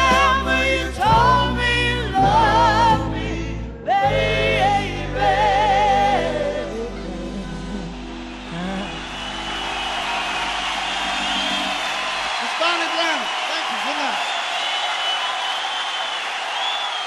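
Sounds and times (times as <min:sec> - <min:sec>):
woman singing with vibrato: 0:00.0 - 0:09.0
live band accompaniment: 0:00.0 - 0:12.4.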